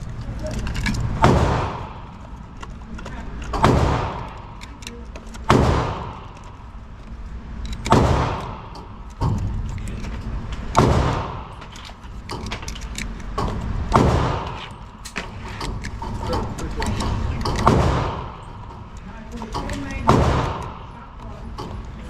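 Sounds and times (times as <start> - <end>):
gunshots with echo: 1.2 - 2.2, 3.6 - 4.6, 5.4 - 6.5, 7.8 - 8.8, 10.7 - 11.6, 13.9 - 14.7, 17.0 - 18.5, 20.0 - 21.0.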